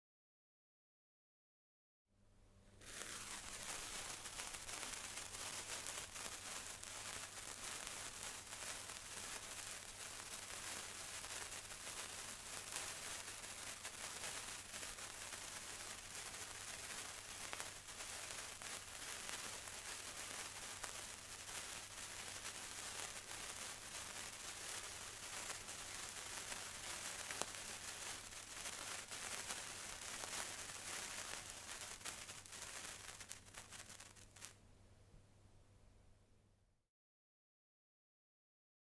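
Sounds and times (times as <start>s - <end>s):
sparkler fizzing and crackling: 2.7s - 34.6s.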